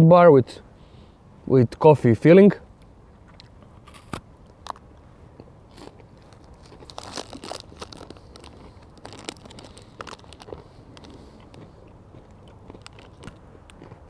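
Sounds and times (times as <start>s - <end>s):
chewing crisp chocolate bar: 3.3s - 14.0s.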